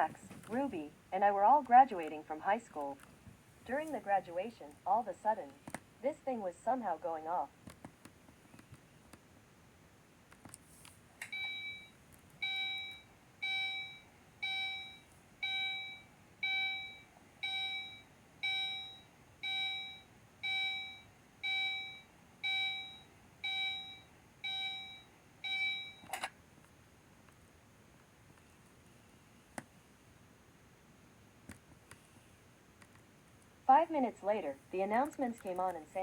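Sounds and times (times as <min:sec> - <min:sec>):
fire alarm beeping: 0:11.3 - 0:26.1.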